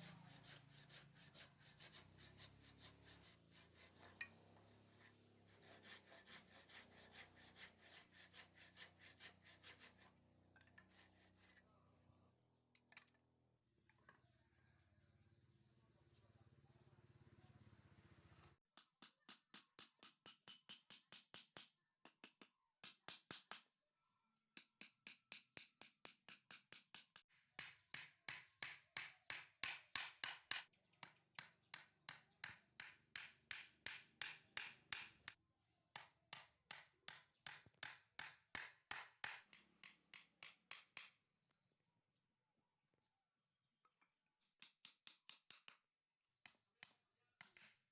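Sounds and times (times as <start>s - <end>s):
hand saw cutting wood: 0.0s - 11.6s.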